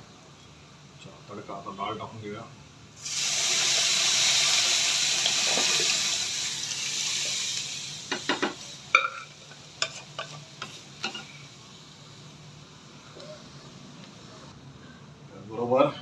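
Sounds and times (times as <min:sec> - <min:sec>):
dal sizzling in hot oil: 0:03.0 - 0:12.4.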